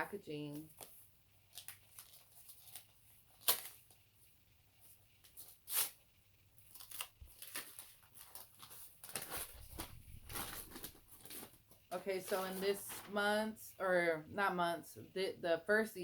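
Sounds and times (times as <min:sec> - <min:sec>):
wrapping rustling: 0:00.6 - 0:04.2, 0:06.6 - 0:13.4
tape ripping: 0:01.5 - 0:04.0, 0:05.3 - 0:06.0, 0:06.7 - 0:11.6.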